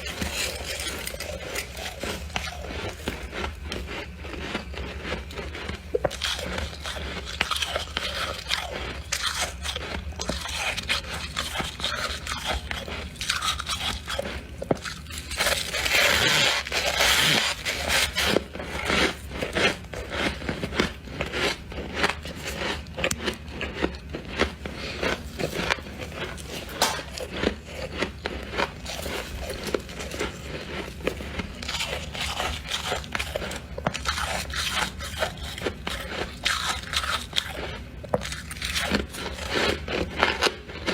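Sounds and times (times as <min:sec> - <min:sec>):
scraping frost: 0:00.0 - 0:09.5, 0:15.2 - 0:20.4
crunching and chewing frost: 0:00.0 - 0:40.9
low steady hum: 0:00.0 - 0:40.9.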